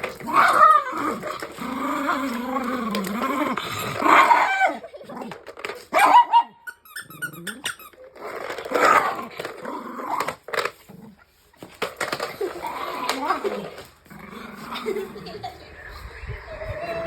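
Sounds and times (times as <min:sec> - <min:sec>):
dog growling and barking: 0:00.0 - 0:06.5, 0:08.2 - 0:11.2, 0:12.5 - 0:15.5.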